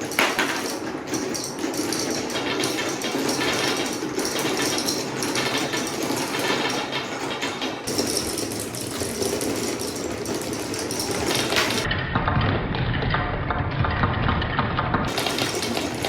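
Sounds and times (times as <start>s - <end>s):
marbles rattling down wooden slopes: 0.0s - 7.0s, 7.6s - 11.9s, 15.1s - 16.0s.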